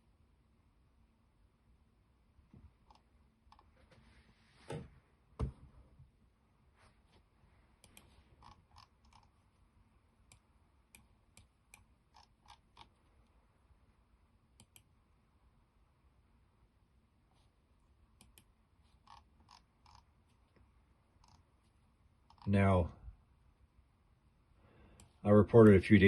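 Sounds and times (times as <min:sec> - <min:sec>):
mouse and keyboard clicking: 0:07.8 - 0:09.4, 0:10.3 - 0:13.0, 0:18.2 - 0:20.1.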